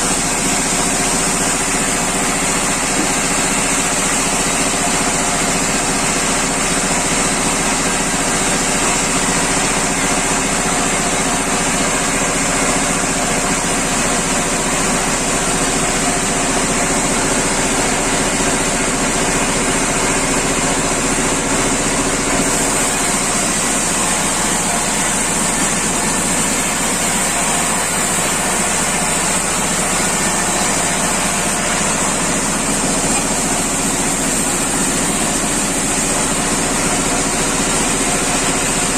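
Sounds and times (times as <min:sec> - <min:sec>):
engine drone: 0:00.0 - 0:38.9
high steady whine: 0:09.8 - 0:38.9.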